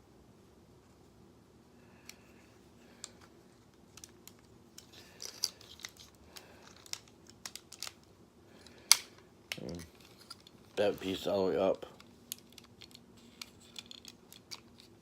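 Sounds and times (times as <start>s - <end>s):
plastic toy parts clicking: 3.9s - 8.1s, 12.0s - 15.0s.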